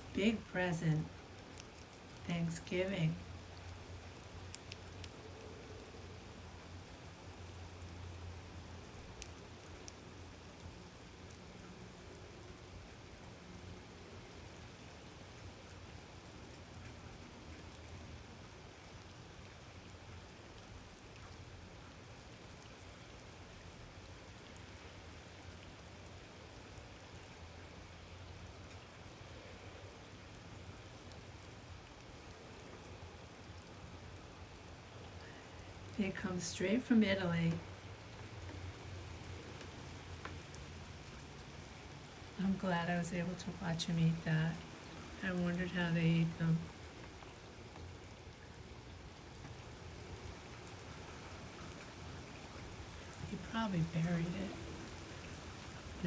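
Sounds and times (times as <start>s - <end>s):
heavy rain falling: 0.0s - 56.0s
low steady hum: 0.0s - 56.0s.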